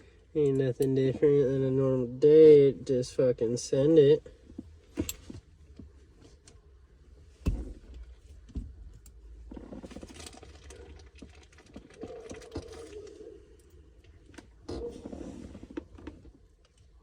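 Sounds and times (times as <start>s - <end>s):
rustling and scraping: 4.3s - 16.9s.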